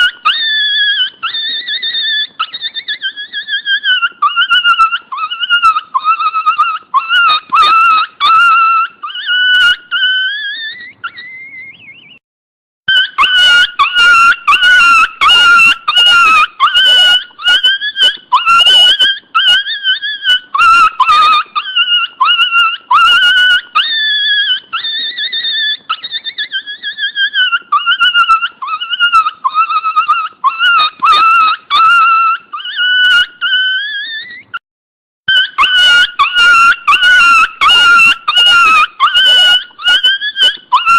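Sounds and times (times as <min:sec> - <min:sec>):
dog whining: 0:00.0 - 0:12.2, 0:12.9 - 0:34.6, 0:35.3 - 0:40.9.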